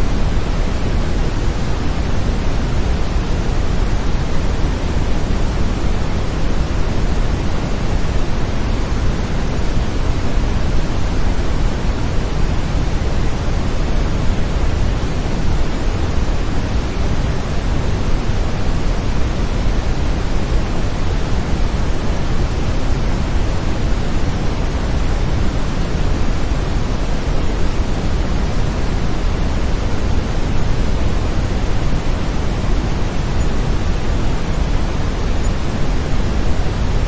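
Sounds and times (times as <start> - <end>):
brown noise: 0.0 - 37.0.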